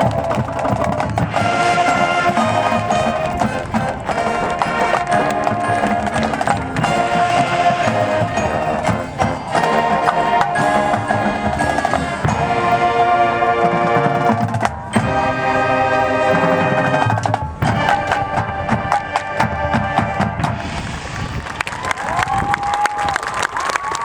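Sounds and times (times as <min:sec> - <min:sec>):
brass and wind chords: 0:00.0 - 0:21.6
percussion hits: 0:00.0 - 0:22.1.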